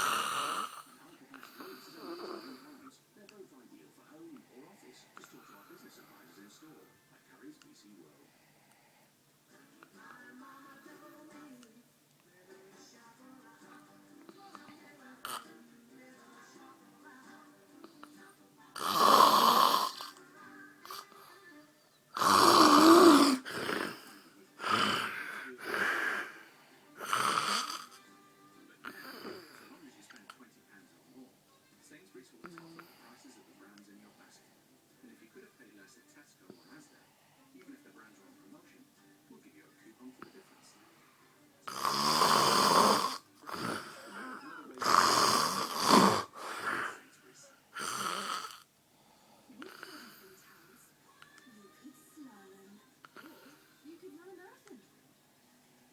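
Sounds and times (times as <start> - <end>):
man snoring: 0.0 - 2.8, 18.8 - 20.2, 22.2 - 26.4, 27.0 - 28.0, 28.8 - 29.7, 41.7 - 47.1, 47.7 - 48.6, 49.6 - 50.3.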